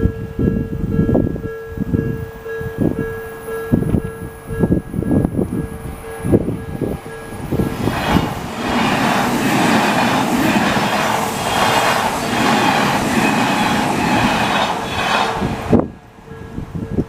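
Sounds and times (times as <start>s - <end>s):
level crossing warning bell: 0.1s - 7.6s
train wheels clattering on rails: 6.1s - 17.0s.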